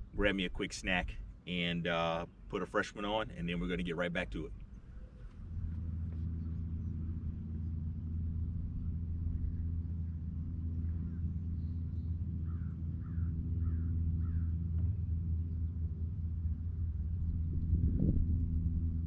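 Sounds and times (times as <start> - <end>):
steady low rumble: 0.0 - 19.0
crow cawing: 12.5 - 14.4.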